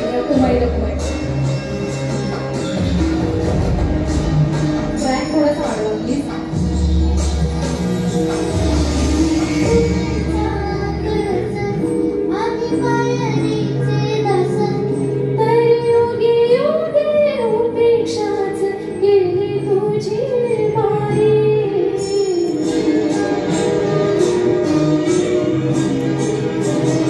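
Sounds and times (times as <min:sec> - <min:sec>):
instrumental accompaniment: 0:00.0 - 0:27.0
woman singing: 0:09.2 - 0:24.2.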